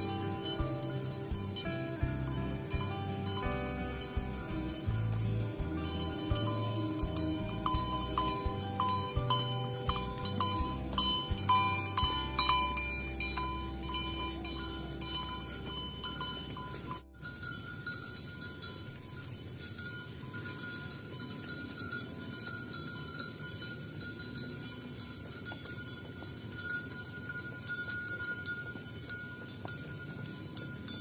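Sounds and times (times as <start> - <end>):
plucked string music: 0.0 - 17.4
cattle bells tinkling and clanking: 0.0 - 31.0.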